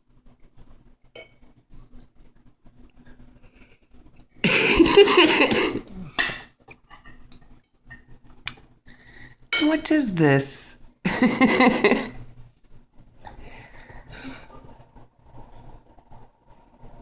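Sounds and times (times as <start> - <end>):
dishes and cutlery clattering: 5.0 - 7.2.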